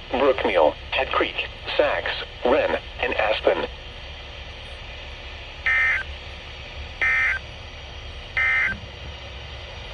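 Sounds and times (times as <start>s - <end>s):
radio hiss and hum: 0.0s - 7.4s.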